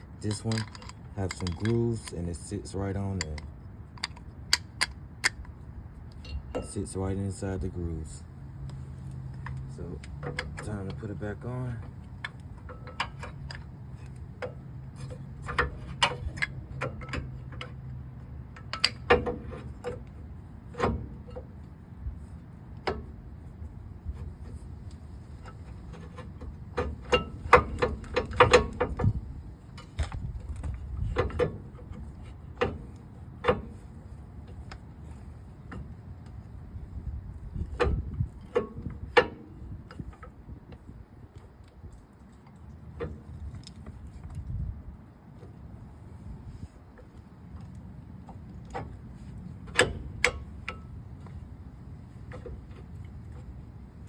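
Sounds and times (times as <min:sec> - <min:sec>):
metallic clicks and clanks: 0:00.0 - 0:08.0, 0:08.7 - 0:44.5, 0:47.0 - 0:53.7.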